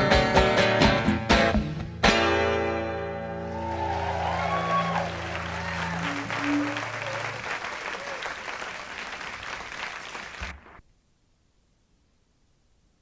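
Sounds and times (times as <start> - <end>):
audience applauding: 3.5 - 10.8.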